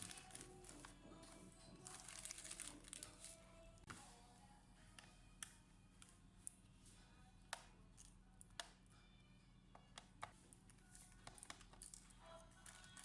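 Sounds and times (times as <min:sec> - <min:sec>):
faint background music: 0:00.0 - 0:13.0.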